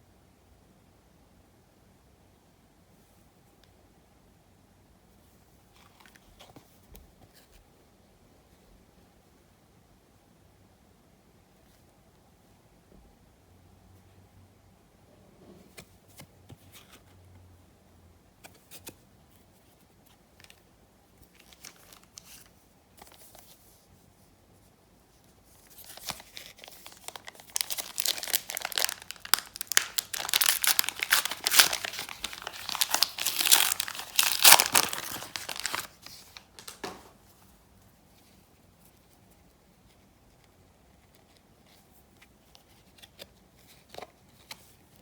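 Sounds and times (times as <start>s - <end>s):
wrapper crinkling and tearing: 21.4s - 22.4s, 25.7s - 37.1s.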